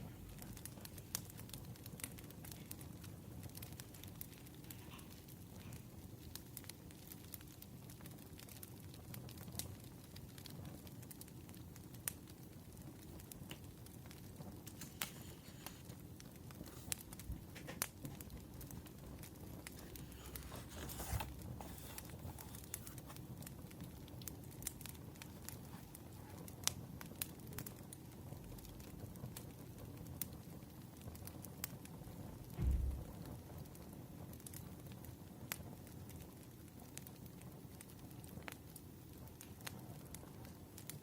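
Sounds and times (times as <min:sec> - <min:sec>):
wood fire crackling: 0:00.0 - 0:41.0
short rustle: 0:19.8 - 0:23.2.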